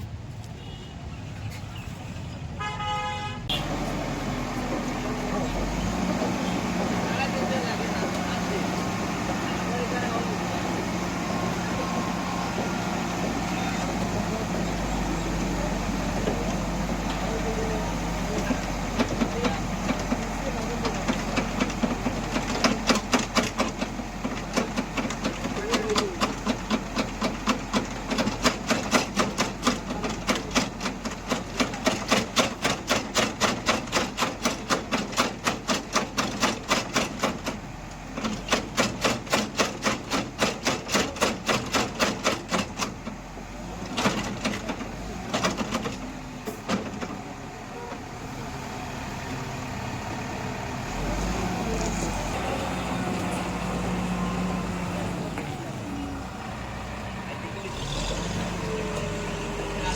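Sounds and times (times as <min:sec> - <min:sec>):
engine running steadily: 0:02.8 - 0:59.9
machinery knocking rhythmically: 0:04.7 - 0:43.2.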